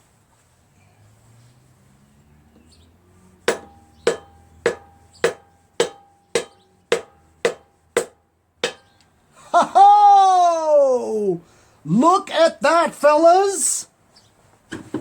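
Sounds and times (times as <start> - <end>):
mallet tapping metal piston: 3.5 - 9.1.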